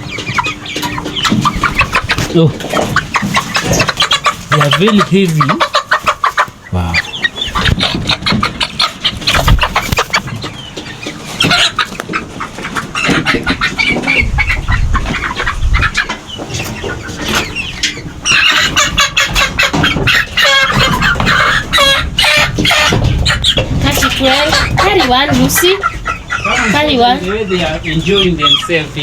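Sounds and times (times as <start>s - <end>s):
chickens clucking: 0.0s - 29.0s.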